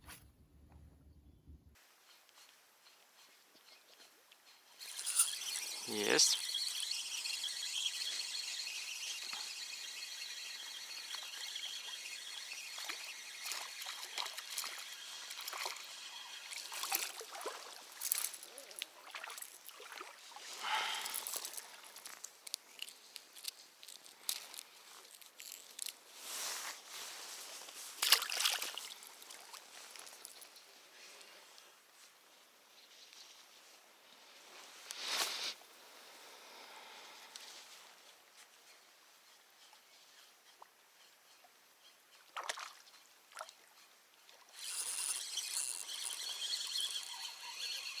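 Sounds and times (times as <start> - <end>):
insect chirring: 4.8 - 19.8, 44.6 - 48.0
water splashing and trickling: 4.8 - 25.9, 28.0 - 30.5, 42.3 - 48.0
clicks and rustles: 21.1 - 26.1.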